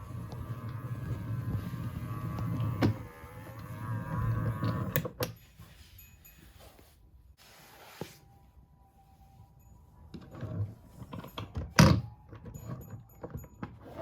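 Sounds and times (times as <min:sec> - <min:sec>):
robot vacuum motor whining: 0:00.0 - 0:05.0.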